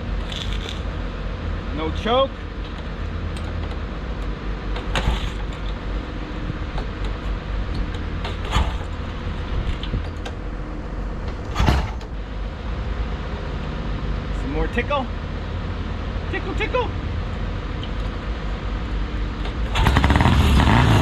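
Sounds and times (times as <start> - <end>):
motorcycle engine being kicked over: 4.9 - 5.6, 8.3 - 9.0, 11.5 - 12.1, 19.7 - 21.0.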